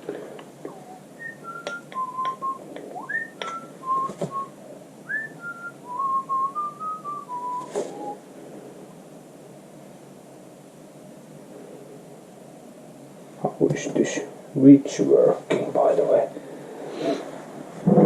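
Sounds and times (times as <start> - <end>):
person whistling a tune: 0.7 - 4.5, 5.1 - 8.2.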